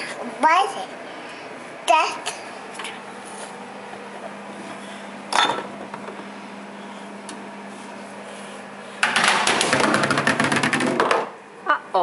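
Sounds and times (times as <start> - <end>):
clattering rattle of items in fridge: 5.3 - 6.2, 9.0 - 11.3.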